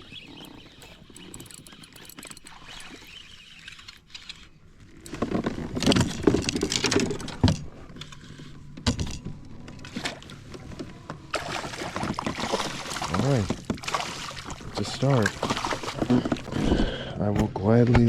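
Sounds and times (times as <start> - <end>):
fish clattering in a kayak: 0.0 - 3.4, 11.4 - 16.7.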